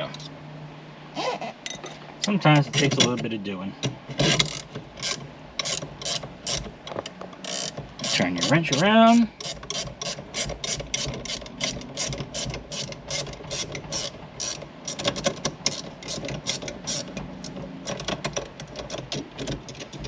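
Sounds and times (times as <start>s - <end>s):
ratcheting wrench clicking: 4.2s - 20.0s.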